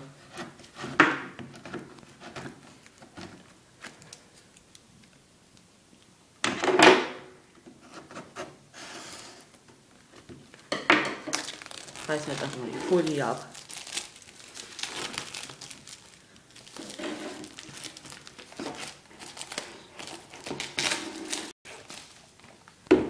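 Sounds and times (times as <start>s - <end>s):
scrape on box: 7.9s - 9.5s.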